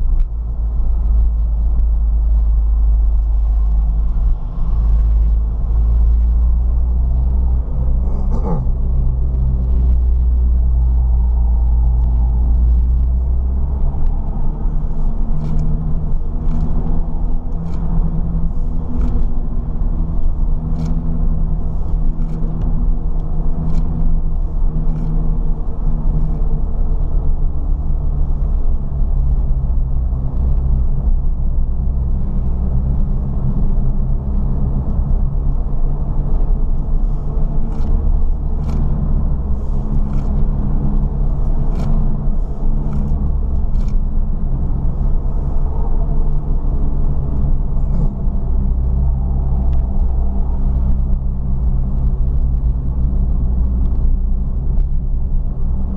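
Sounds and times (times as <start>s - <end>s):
road and cabin rumble: 0.0s - 55.9s
car engine revving: 3.2s - 22.4s.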